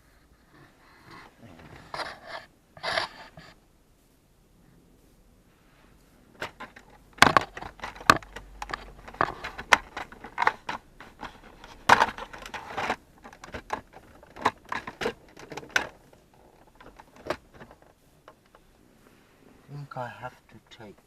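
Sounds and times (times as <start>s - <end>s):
hard objects clicking and scraping: 6.3s - 18.7s.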